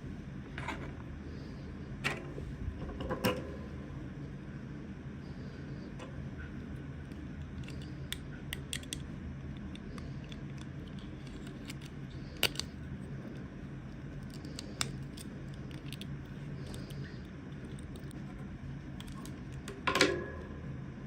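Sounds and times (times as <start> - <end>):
steady low hum: 0.0 - 21.0
packaging clicks and snips: 7.1 - 12.8, 14.0 - 18.2.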